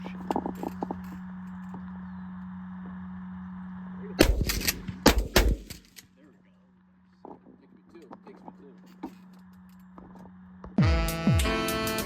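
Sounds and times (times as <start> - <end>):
steady low hum: 0.0 - 12.0
shotgun blasts: 4.2 - 5.8.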